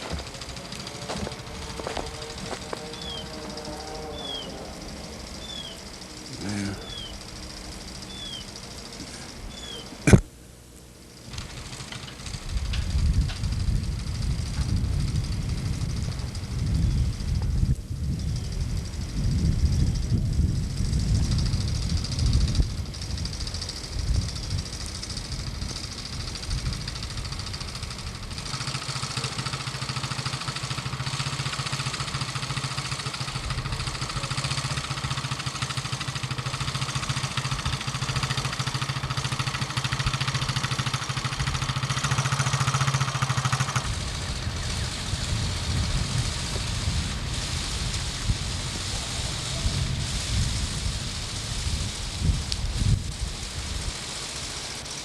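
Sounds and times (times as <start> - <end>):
constant hiss: 0.0 - 55.0
motor hum: 0.0 - 55.0.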